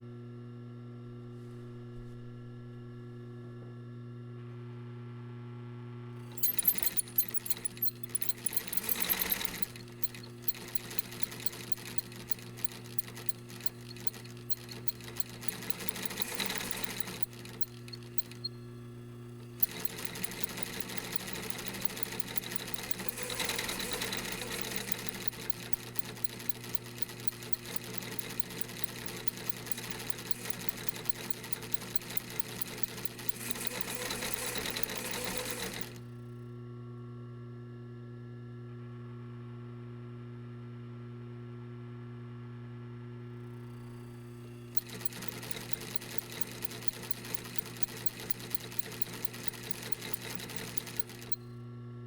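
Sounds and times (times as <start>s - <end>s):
sewing machine click: 6.3s - 18.5s, 19.4s - 36.0s, 44.8s - 51.4s
sewing machine motor humming: 6.3s - 18.5s, 19.4s - 36.0s, 44.8s - 51.4s
sewing machine needle stitching: 6.3s - 18.5s, 19.4s - 36.0s, 44.8s - 51.4s.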